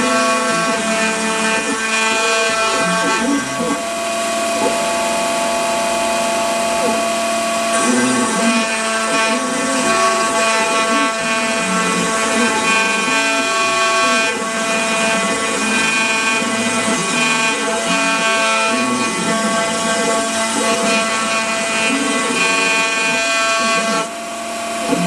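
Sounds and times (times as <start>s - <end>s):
router motor whine: 0.0s - 25.0s.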